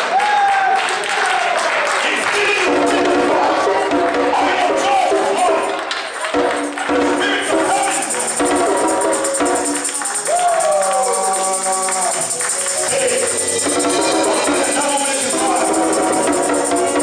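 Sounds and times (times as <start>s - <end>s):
church worship singing: 1.9s - 17.0s
high jingling rhythm: 4.8s - 17.0s.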